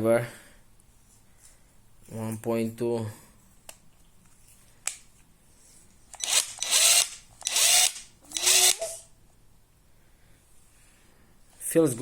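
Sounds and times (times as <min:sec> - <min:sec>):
impact wrench motor whirring: 0:06.1 - 0:08.9.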